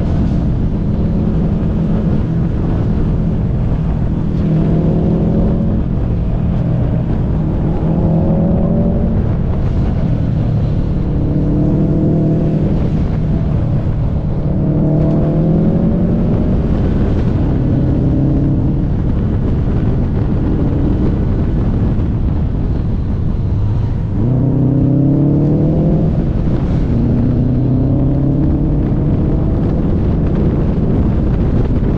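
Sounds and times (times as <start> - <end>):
car engine accelerating: 0.0 - 31.9
road and wind rumble: 0.0 - 31.9.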